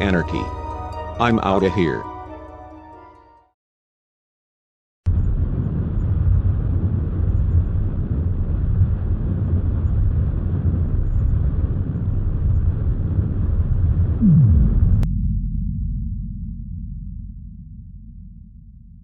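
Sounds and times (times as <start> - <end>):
loud low rumble: 5.1 - 19.0
tone sliding down in pitch: 14.2 - 15.0.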